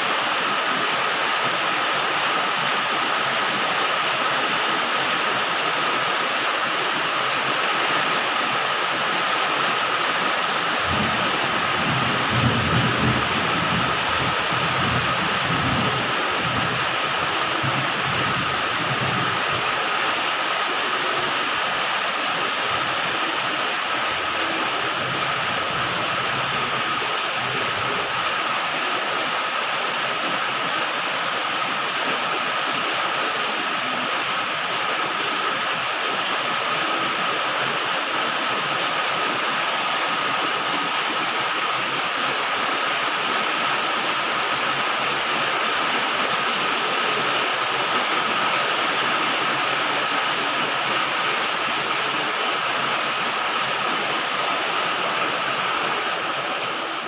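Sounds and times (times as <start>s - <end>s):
heavy rain on a metal roof: 0.0s - 57.0s
low rumble of thunder: 11.0s - 16.8s.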